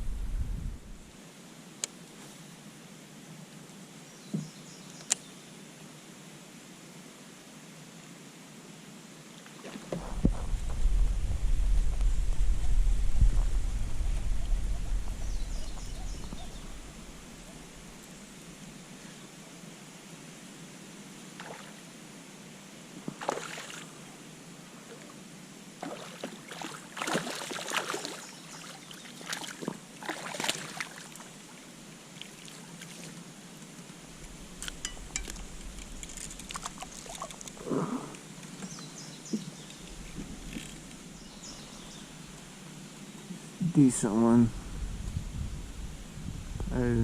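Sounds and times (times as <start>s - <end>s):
water splashing around a kayak: 9.4s - 18.7s, 21.3s - 21.9s, 23.0s - 23.9s, 25.8s - 37.7s.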